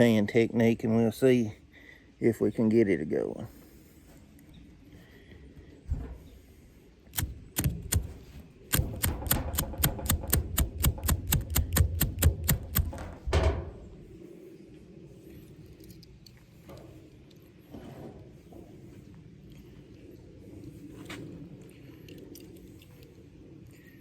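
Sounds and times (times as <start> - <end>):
fire starter striker scraping: 7.1 - 14.1.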